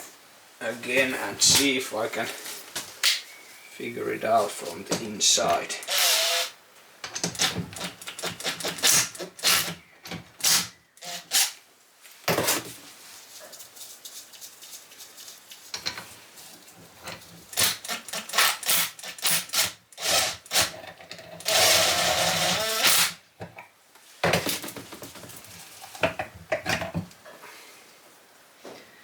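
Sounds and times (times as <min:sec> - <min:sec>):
harsh grinding noise: 0:05.4 - 0:06.6.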